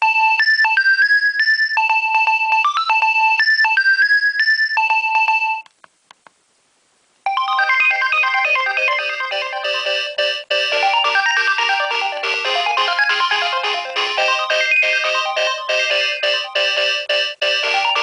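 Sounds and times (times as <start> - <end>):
mobile phone ringtone melody: 0.0 - 5.6, 7.3 - 18.0
faint clicks: 5.6 - 6.4.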